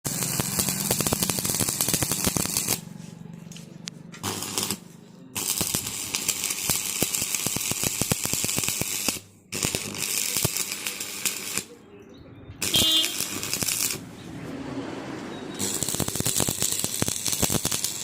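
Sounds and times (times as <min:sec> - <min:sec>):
arc welding crackling hiss: 0:00.1 - 0:02.8, 0:04.2 - 0:04.8, 0:05.4 - 0:11.7, 0:12.6 - 0:14.0, 0:15.6 - 0:18.0.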